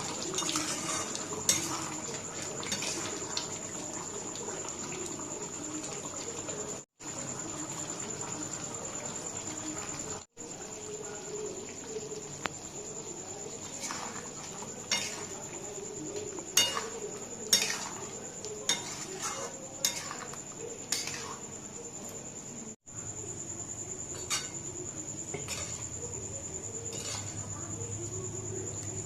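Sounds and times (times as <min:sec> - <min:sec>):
metal spoon scraping a pot: 0:00.0 - 0:03.3, 0:13.6 - 0:15.4, 0:16.6 - 0:21.4, 0:24.1 - 0:24.7, 0:25.3 - 0:26.0, 0:26.8 - 0:27.6
crickets chirring: 0:00.0 - 0:29.0.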